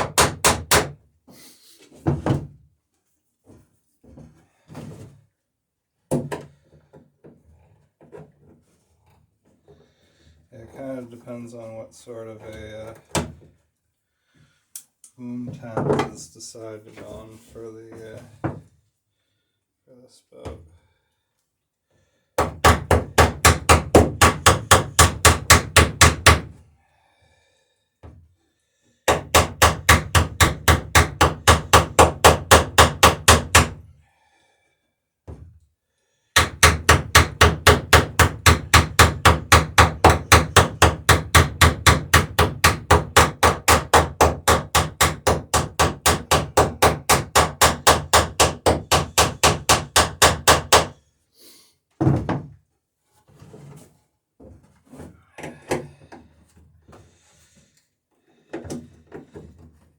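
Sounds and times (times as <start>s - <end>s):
hammer blows peening rivets on wood: 0.0s - 1.0s, 22.4s - 26.6s, 29.0s - 33.8s, 36.4s - 51.0s.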